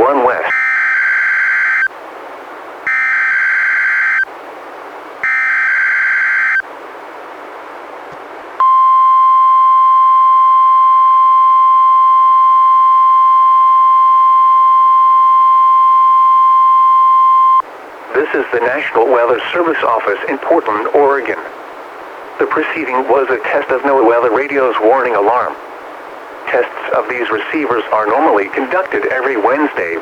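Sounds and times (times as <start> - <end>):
radio hiss: 0.0 - 1.9, 18.1 - 30.0
steady alarm tone: 0.5 - 1.9, 2.9 - 4.3, 5.2 - 6.6
digital data bursts: 2.9 - 4.3, 5.2 - 6.6.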